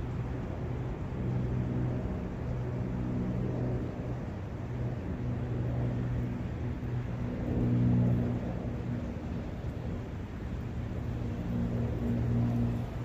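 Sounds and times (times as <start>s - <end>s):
low engine hum: 0.0s - 13.0s.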